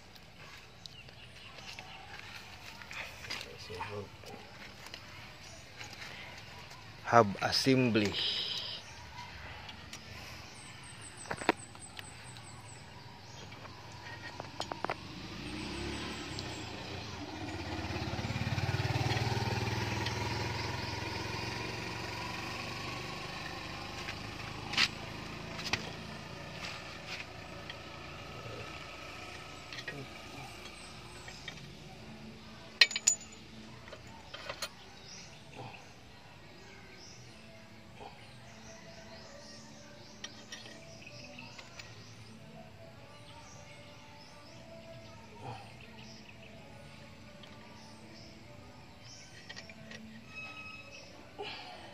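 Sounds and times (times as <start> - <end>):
vehicle passing: 13.4 - 32.7
metal tools clinking: 32.8 - 34.9, 40.2 - 42.0, 49.2 - 51.2.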